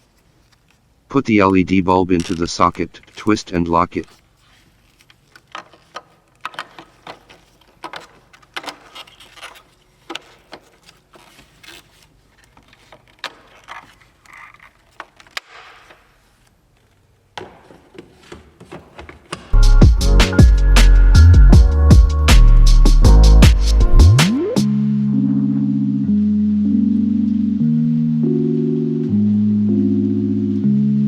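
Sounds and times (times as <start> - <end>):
plastic clicks and rubbing: 0.0 - 3.4, 4.0 - 17.1.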